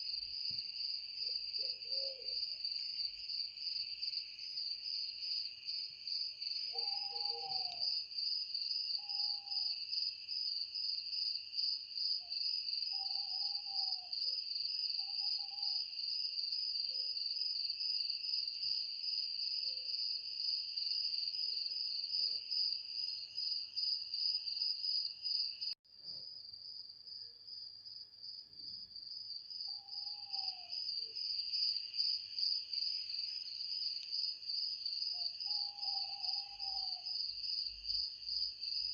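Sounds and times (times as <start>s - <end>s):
crickets trilling: 5.3s - 10.1s, 12.0s - 16.2s, 29.6s - 38.9s.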